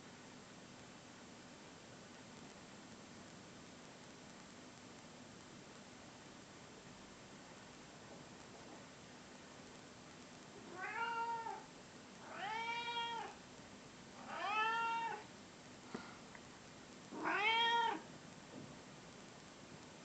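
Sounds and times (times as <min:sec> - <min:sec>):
cat meowing: 0:10.6 - 0:13.4, 0:14.2 - 0:15.3, 0:17.1 - 0:18.1.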